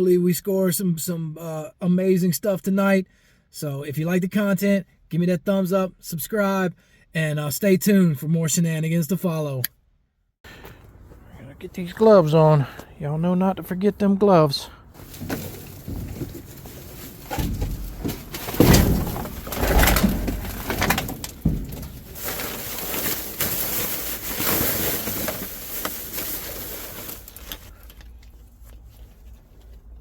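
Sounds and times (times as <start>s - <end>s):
trash bags rustling and knocking: 14.9s - 27.7s.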